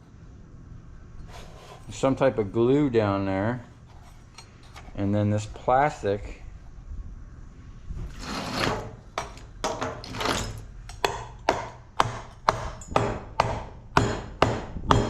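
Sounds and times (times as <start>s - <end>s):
hammer striking light fixture: 11.0s - 15.0s.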